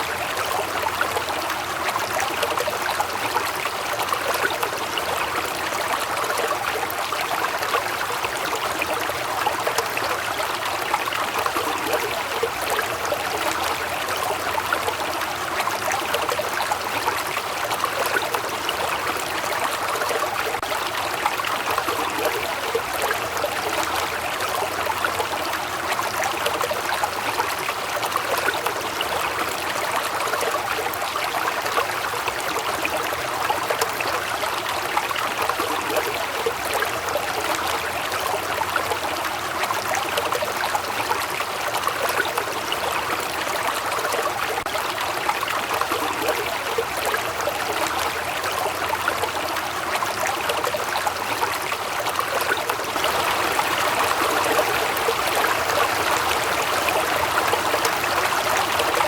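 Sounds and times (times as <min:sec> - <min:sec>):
waterfall rushing: 0:52.9 - 0:59.0.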